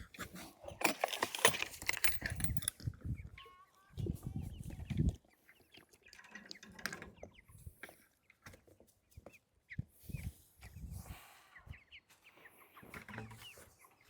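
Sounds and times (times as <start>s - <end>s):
chicks peeping and clucking: 3.0s - 14.0s.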